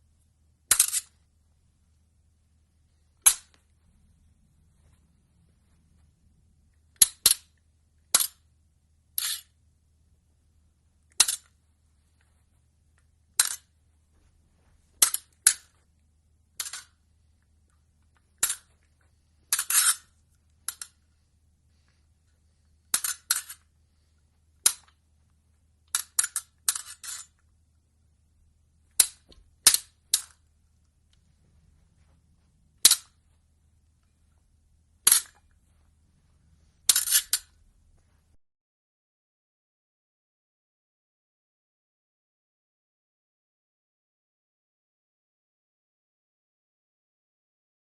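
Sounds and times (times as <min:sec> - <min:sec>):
fencing blades clashing: 0:00.7 - 0:01.2, 0:03.2 - 0:03.6, 0:19.5 - 0:21.0, 0:32.8 - 0:33.2, 0:36.9 - 0:37.6.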